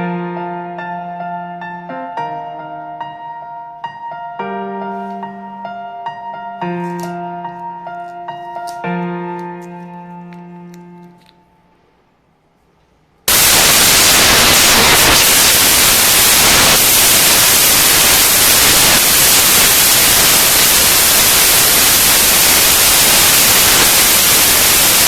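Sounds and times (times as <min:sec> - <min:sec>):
white noise static: 0:12.0 - 0:25.0.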